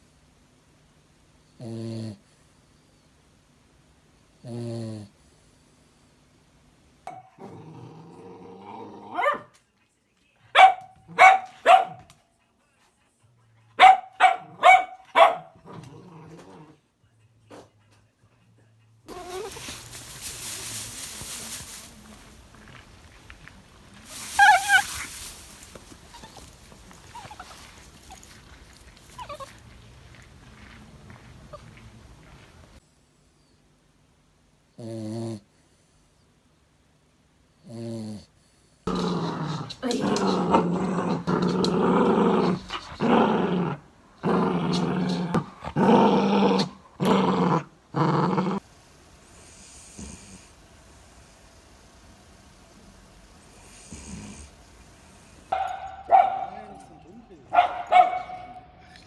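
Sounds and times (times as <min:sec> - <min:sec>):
dog growling: 0:07.1 - 0:09.5, 0:14.1 - 0:16.9, 0:19.1 - 0:20.2, 0:21.4 - 0:32.8, 0:38.9 - 0:48.6
dog yelping: 0:09.1 - 0:09.5, 0:10.6 - 0:12.1, 0:13.8 - 0:15.6, 0:19.1 - 0:19.7, 0:24.2 - 0:25.1, 0:25.7 - 0:28.4, 0:29.1 - 0:29.8, 0:55.6 - 0:56.9, 0:57.5 - 0:58.6
dog whining: 0:19.1 - 0:19.7, 0:24.2 - 0:25.1, 0:25.7 - 0:28.3, 0:29.1 - 0:29.8.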